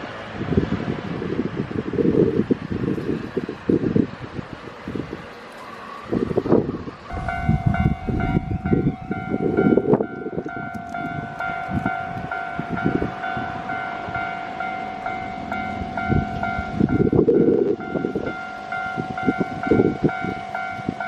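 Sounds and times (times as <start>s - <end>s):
train wheels rumbling and clattering: 0.0s - 21.0s
level crossing warning bell: 7.1s - 21.0s.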